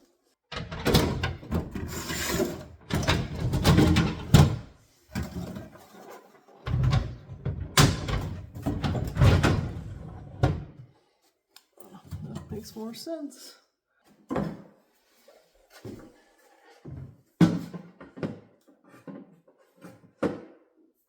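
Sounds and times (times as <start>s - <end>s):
knocks and clatters: 0.5s - 5.8s.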